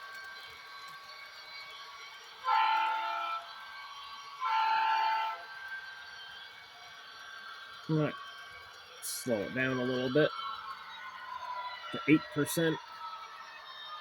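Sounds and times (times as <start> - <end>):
diesel engine running: 0.0 - 14.0
diesel locomotive horn blasts: 2.4 - 3.7, 4.3 - 5.8.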